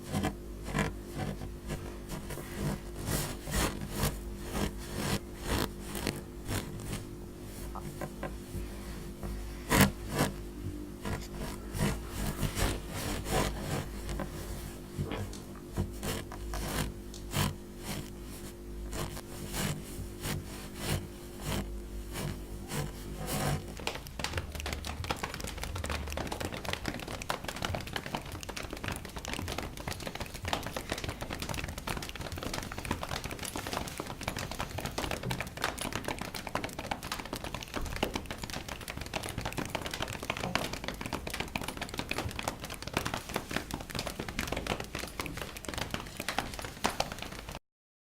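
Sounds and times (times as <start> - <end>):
small taps and clicks: 23.4 - 47.6.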